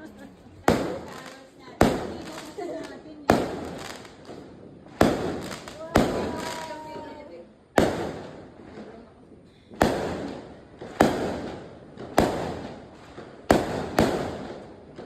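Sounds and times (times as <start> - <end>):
fireworks exploding: 0.0 - 15.0.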